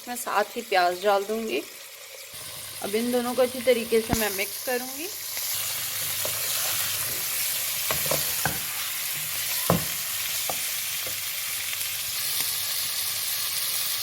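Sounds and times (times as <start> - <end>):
chicken and onion sizzling in oil: 0.0 - 14.0
utensil knocking and scraping pan: 6.0 - 8.8, 9.5 - 10.7.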